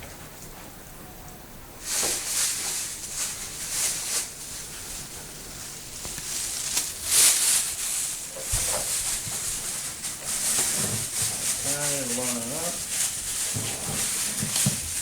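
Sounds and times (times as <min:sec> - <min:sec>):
laminate panel rustling and scraping: 0:13.1 - 0:15.0.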